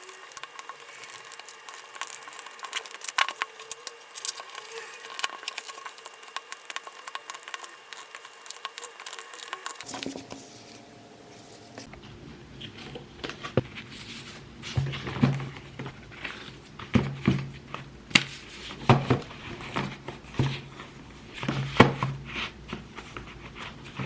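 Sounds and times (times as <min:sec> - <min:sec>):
small objects clicking and tapping: 0:00.0 - 0:10.4.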